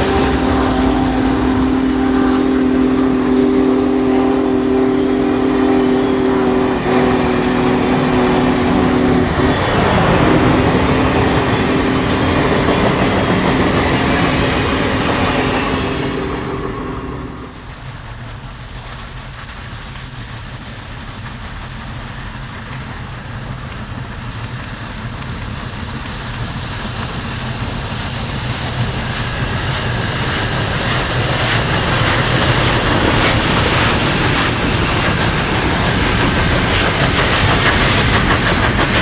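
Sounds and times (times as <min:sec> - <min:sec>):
chime steam whistle: 0:00.0 - 0:17.7
train running past: 0:00.0 - 0:39.0.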